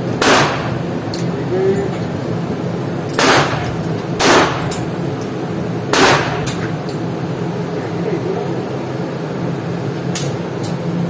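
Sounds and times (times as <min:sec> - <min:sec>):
steady low hum: 0:00.0 - 0:11.0
pistol shots: 0:00.2 - 0:00.8, 0:03.2 - 0:04.8, 0:05.9 - 0:06.6.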